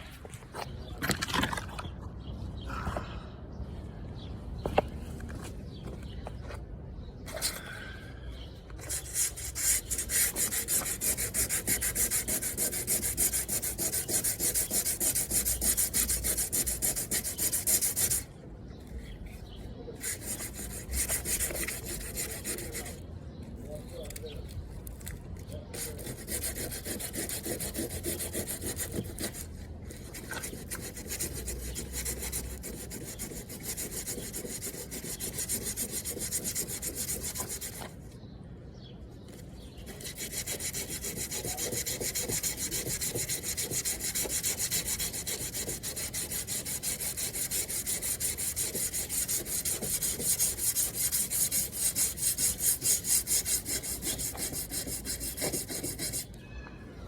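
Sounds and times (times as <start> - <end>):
sanding car body panel: 8.9 - 18.3, 20.0 - 23.0, 25.8 - 29.4, 30.0 - 37.9, 39.9 - 56.3.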